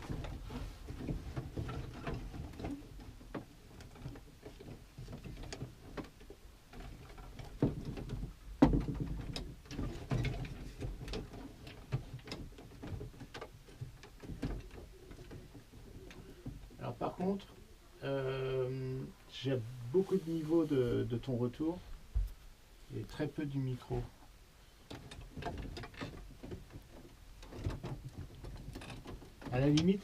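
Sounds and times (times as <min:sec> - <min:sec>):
foley clicks and knocks: 0:00.0 - 0:16.8.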